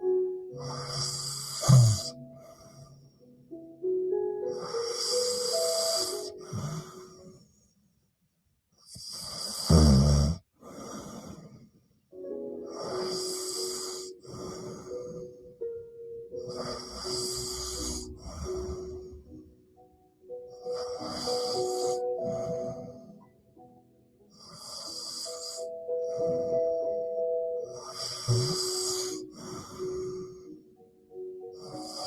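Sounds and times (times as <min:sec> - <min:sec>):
quiet background music: 0:00.0 - 0:07.6, 0:12.1 - 0:32.0
woman snoring: 0:00.7 - 0:02.2, 0:09.0 - 0:11.4, 0:27.8 - 0:30.1.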